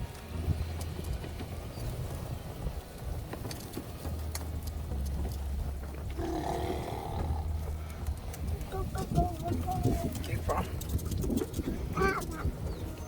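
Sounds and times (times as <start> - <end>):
tractor diesel engine under load: 0.0 - 12.0
round baler working: 0.0 - 13.0
sharp clicks: 7.8 - 12.4.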